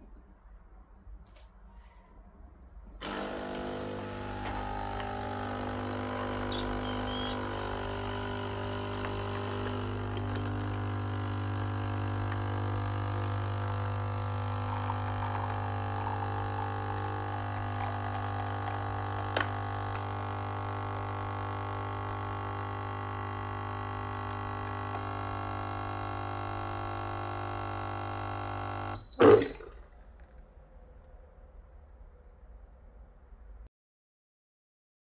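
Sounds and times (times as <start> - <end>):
coffee machine pump humming: 3.0 - 30.3.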